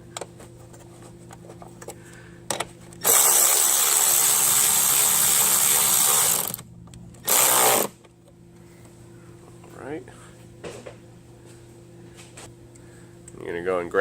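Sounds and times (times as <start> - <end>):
cordless power driver running: 3.0 - 8.0.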